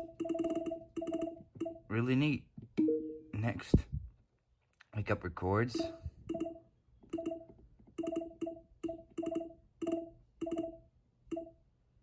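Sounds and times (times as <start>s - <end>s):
plucked menu blips: 0.0s - 1.8s, 2.8s - 3.3s.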